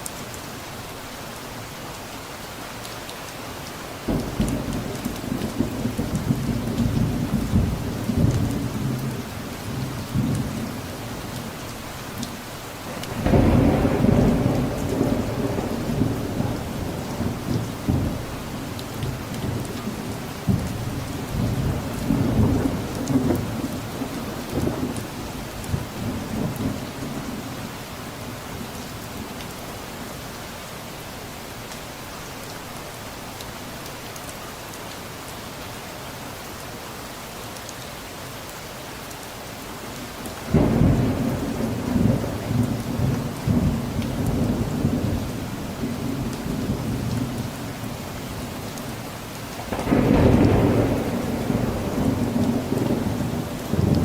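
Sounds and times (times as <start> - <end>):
steady rain: 0.0 - 54.0
thunder rumbling: 12.9 - 27.4, 40.5 - 54.0.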